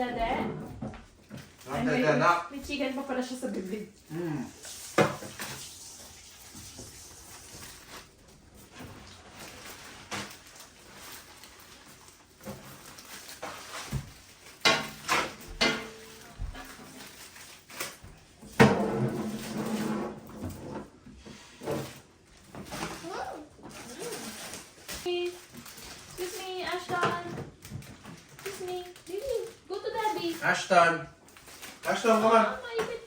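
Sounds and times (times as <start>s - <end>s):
dishes knocking and clinking: 14.6s - 16.7s, 18.5s - 20.8s.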